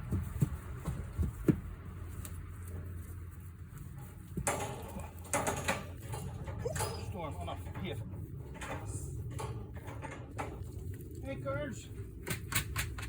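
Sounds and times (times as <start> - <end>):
rattling clatter: 3.8 - 11.1.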